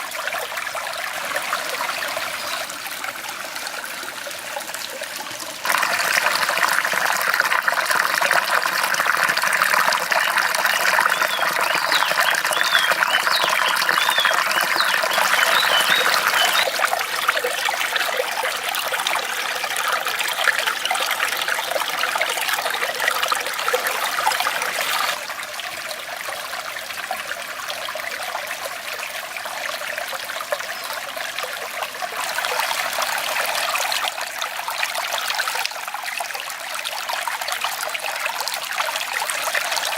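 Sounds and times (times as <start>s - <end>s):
river water rushing: 0.0s - 6.9s, 11.1s - 19.4s.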